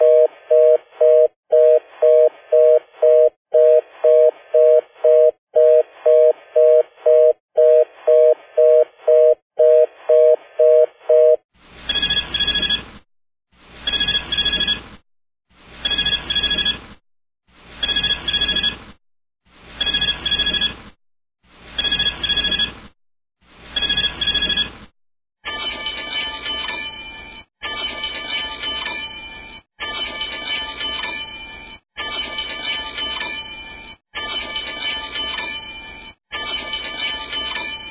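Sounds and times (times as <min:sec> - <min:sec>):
telephone busy signal beeps: 0:00.0 - 0:12.8, 0:13.9 - 0:14.8, 0:15.9 - 0:16.8, 0:17.8 - 0:18.8, 0:19.8 - 0:20.7, 0:21.8 - 0:22.7, 0:23.8 - 0:24.7
telephone bell ringing: 0:25.4 - 0:37.9.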